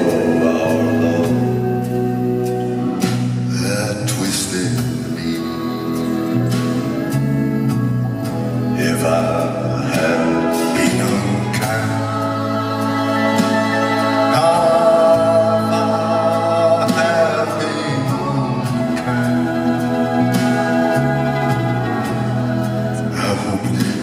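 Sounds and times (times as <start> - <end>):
slow song with singing: 0.0 - 24.0.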